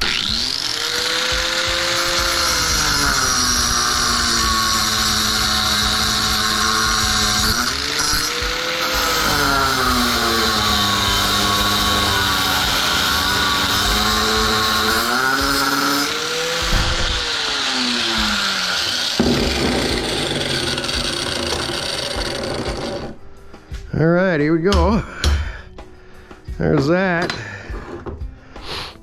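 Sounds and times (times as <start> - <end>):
power tool cutting metal: 0.0 - 23.2.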